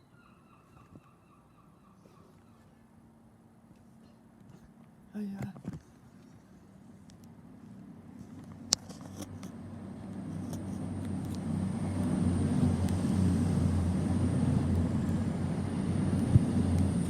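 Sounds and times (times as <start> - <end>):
diesel train passing: 9.4 - 17.0.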